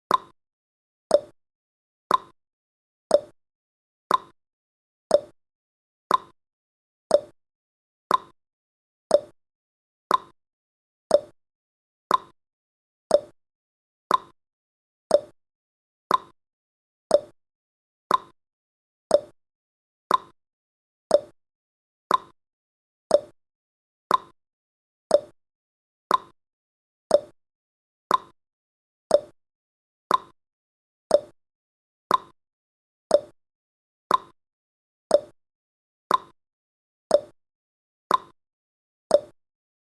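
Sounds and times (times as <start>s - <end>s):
timer ticking: 0.1s - 0.3s, 1.1s - 1.3s, 2.1s - 2.4s, 3.1s - 3.3s, 4.1s - 4.4s, 5.1s - 5.4s, 6.1s - 6.4s, 7.1s - 7.4s, 8.1s - 8.4s, 9.1s - 9.4s, 10.1s - 10.4s, 11.1s - 11.4s, 12.1s - 12.4s, 13.1s - 13.4s, 14.1s - 14.4s, 15.1s - 15.4s, 16.1s - 16.4s, 17.1s - 17.4s, 18.1s - 18.4s, 19.1s - 19.4s, 20.1s - 20.4s, 21.1s - 21.4s, 22.1s - 22.4s, 23.1s - 23.4s, 24.1s - 24.4s, 25.1s - 25.4s, 26.1s - 26.4s, 27.1s - 27.4s, 28.1s - 28.4s, 29.1s - 29.4s, 30.1s - 30.4s, 31.1s - 31.4s, 32.1s - 32.4s, 33.1s - 33.4s, 34.1s - 34.4s, 35.1s - 35.4s, 36.1s - 36.4s, 37.1s - 37.4s, 38.1s - 38.4s, 39.1s - 39.4s.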